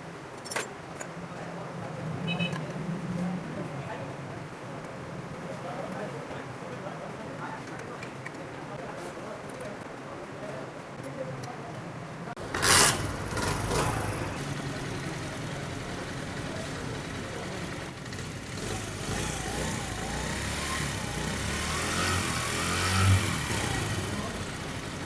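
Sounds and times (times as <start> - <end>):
motorcycle engine idling: 12.4 - 25.0.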